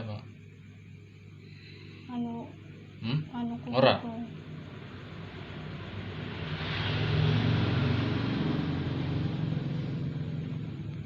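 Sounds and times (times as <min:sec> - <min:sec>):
vehicle passing by: 0:04.4 - 0:11.0.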